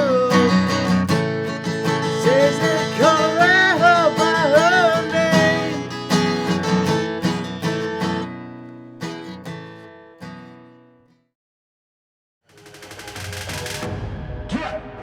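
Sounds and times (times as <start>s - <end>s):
person singing: 0.0s - 1.0s, 1.9s - 6.0s
strummed acoustic guitar chords: 0.0s - 11.1s.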